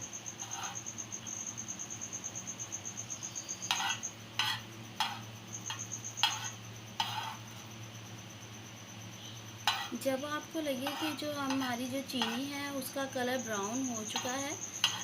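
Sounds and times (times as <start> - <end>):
cricket chirping: 0.0 - 15.0
utensil scraping a frying pan: 0.4 - 0.9, 3.6 - 7.4, 9.6 - 10.0, 10.7 - 12.6, 14.1 - 15.0.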